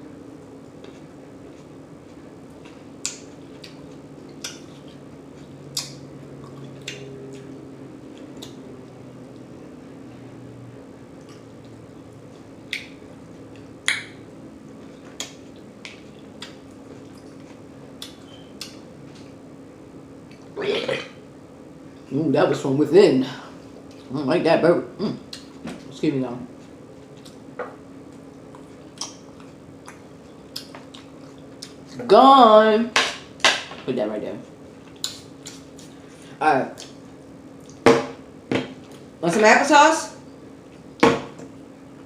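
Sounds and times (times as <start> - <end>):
steady low hum: 0.0 - 42.0
wet lip smacks and clicks: 5.7 - 7.1, 13.8 - 14.2, 28.1 - 31.8, 35.0 - 35.7.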